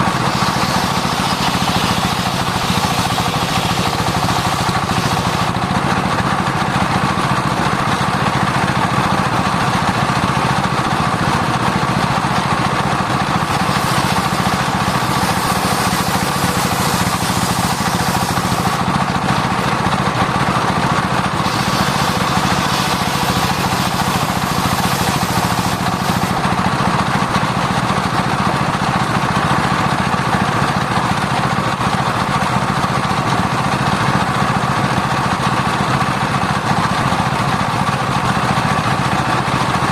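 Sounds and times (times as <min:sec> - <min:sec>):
saw blade cutting wood hiss: 0:00.0 - 0:05.6, 0:13.3 - 0:19.8, 0:21.4 - 0:26.5
circular saw running: 0:00.0 - 0:39.9.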